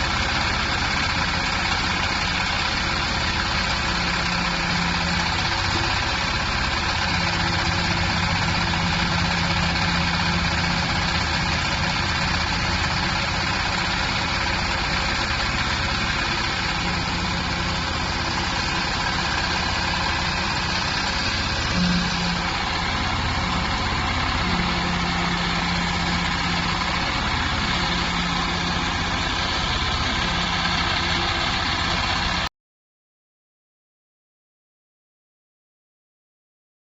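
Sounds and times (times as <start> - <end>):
baler mechanical drone: 0.0 - 32.5
low hum: 0.0 - 32.5.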